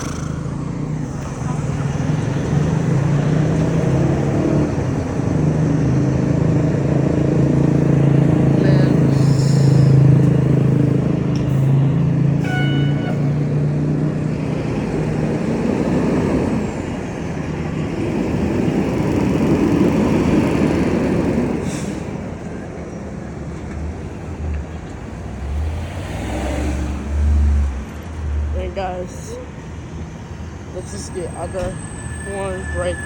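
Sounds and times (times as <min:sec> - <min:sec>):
large vehicle engine running: 0:00.0 - 0:25.4.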